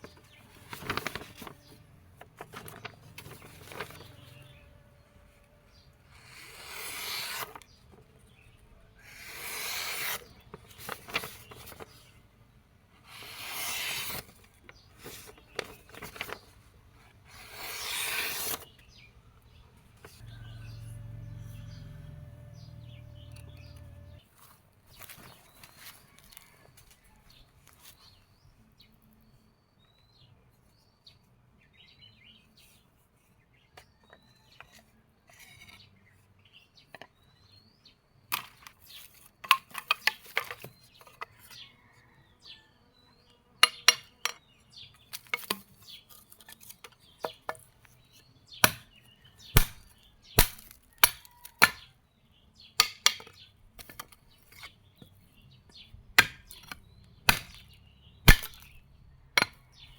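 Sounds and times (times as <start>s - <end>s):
faint bird chirps: 18.8s - 24.2s, 41.0s - 43.5s.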